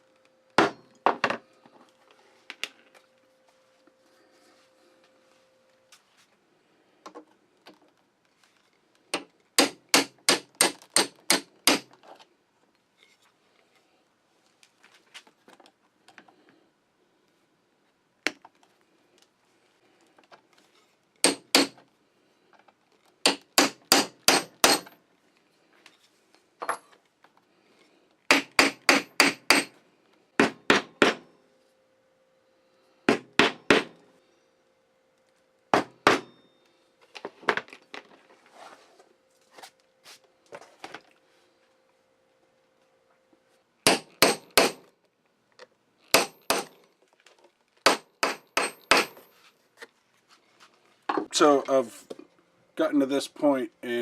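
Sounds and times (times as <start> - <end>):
hammer striking metal tool: 23.3 - 25.0, 28.3 - 29.8, 43.9 - 44.9, 46.2 - 46.8, 47.9 - 49.4.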